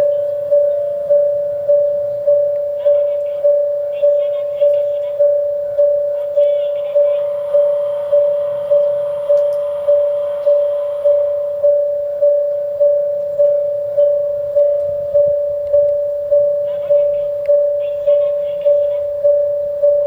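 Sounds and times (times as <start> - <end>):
level-crossing warning bell ringing: 0.0 - 20.0.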